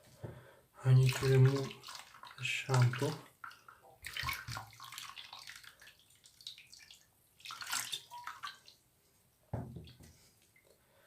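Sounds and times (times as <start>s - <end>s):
water splashing and dripping: 0.9s - 8.8s
knock: 9.5s - 10.1s.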